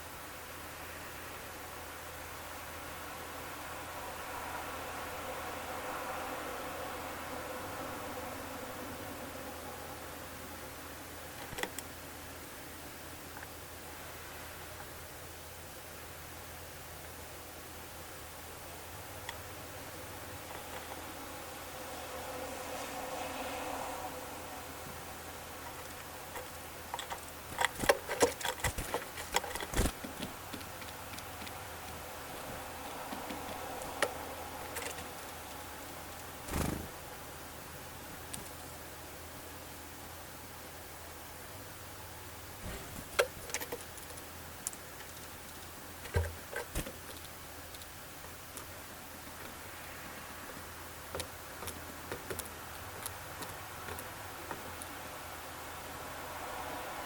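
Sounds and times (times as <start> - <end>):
faint steady hiss: 0.0 - 57.0
birds pecking with sharp taps: 25.6 - 37.0, 42.6 - 49.6, 50.4 - 55.0.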